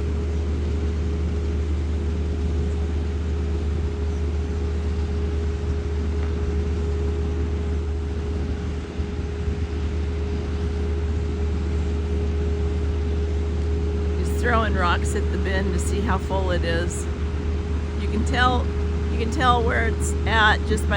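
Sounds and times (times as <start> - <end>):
machinery whine: 4.6 - 20.9.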